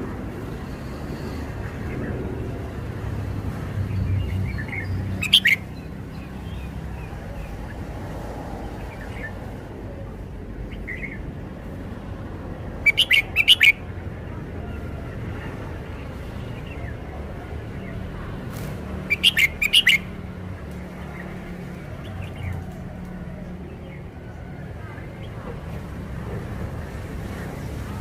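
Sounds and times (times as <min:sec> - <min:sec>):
bird singing sharp notes: 0:04.5 - 0:06.6, 0:12.8 - 0:13.8, 0:19.1 - 0:20.0.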